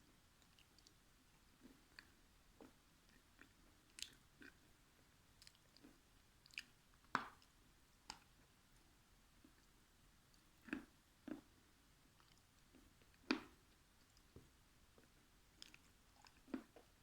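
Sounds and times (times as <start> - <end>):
person chewing food: 1.6 - 4.7, 5.4 - 7.5, 10.3 - 11.6, 12.2 - 17.0.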